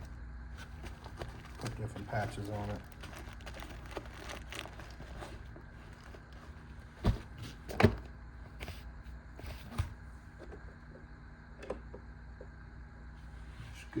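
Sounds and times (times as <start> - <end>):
gear handling clicks and rustles: 0.6 - 8.0.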